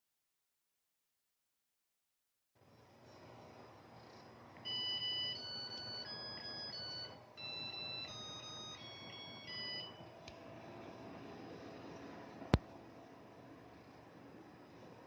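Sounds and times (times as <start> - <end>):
rice cooker buzzer beeping melody: 4.6 - 10.1.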